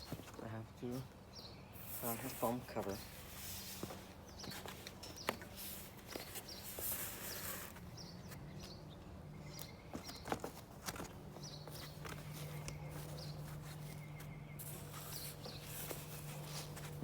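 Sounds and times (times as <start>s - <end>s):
small birds chirping: 0.0s - 17.0s
foam rustling: 1.8s - 7.9s, 10.6s - 17.0s.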